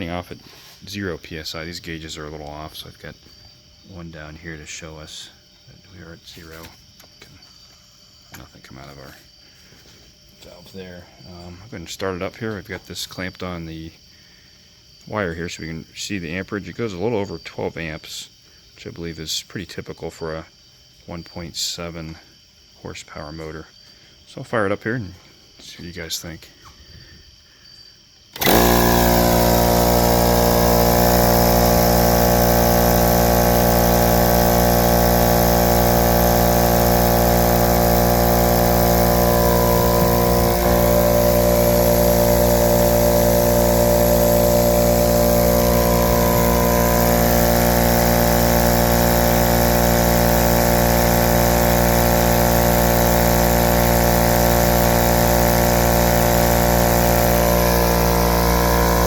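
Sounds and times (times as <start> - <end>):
electric air compressor running: 28.4 - 59.0.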